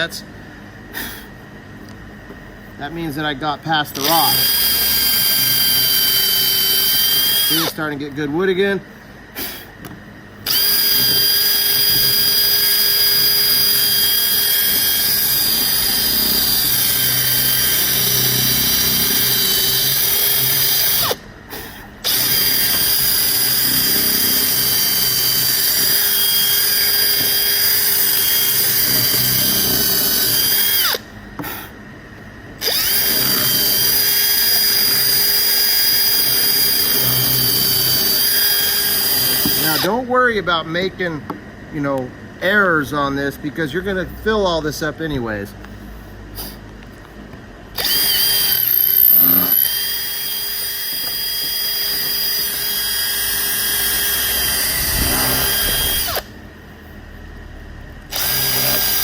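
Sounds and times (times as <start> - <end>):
electric drill boring into wood: 4.0 - 7.8, 10.4 - 21.2, 22.0 - 31.0, 32.6 - 39.9, 47.8 - 56.3, 58.1 - 59.0.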